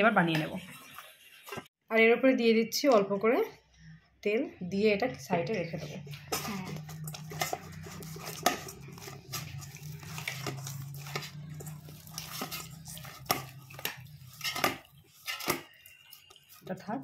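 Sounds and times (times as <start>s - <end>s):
kitchen bowls and utensils handled: 5.3s - 17.0s.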